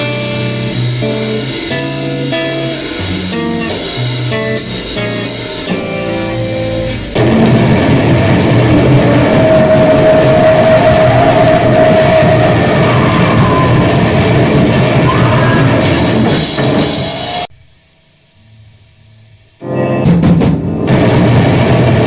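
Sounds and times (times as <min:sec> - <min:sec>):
loud grindcore noise music: 0:00.0 - 0:17.5, 0:20.8 - 0:22.0.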